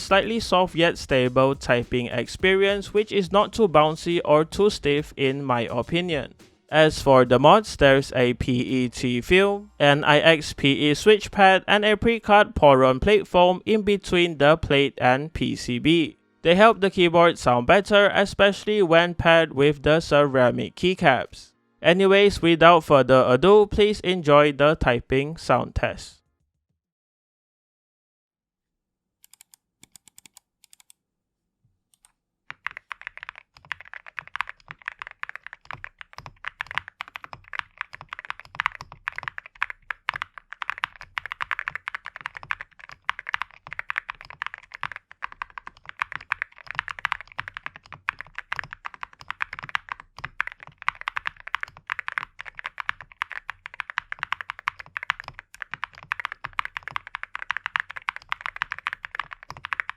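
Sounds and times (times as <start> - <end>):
mechanical keyboard typing: 0.0 - 6.2, 29.3 - 30.9, 32.0 - 59.9.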